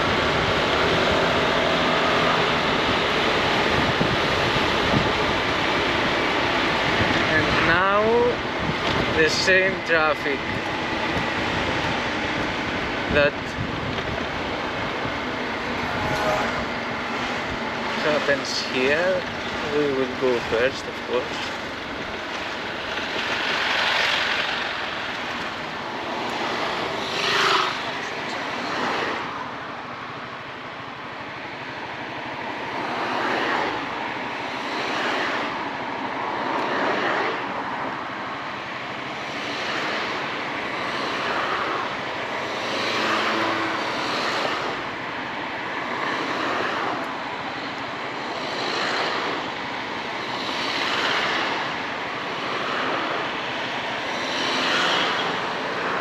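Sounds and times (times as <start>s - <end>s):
scooter engine: 10.4s - 35.9s, 37.9s - 56.0s.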